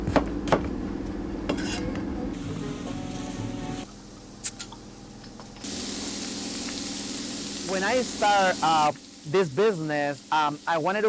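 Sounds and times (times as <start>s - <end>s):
food sizzling: 2.4s - 11.0s.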